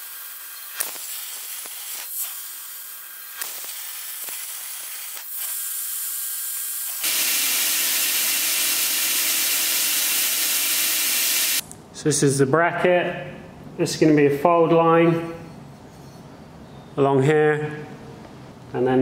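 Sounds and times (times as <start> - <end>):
plasma cutter hissing: 0.0 - 11.6.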